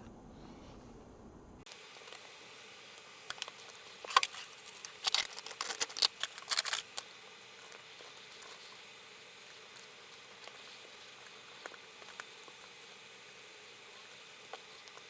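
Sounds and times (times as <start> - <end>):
hands clicking small hardware parts: 3.3 - 8.5.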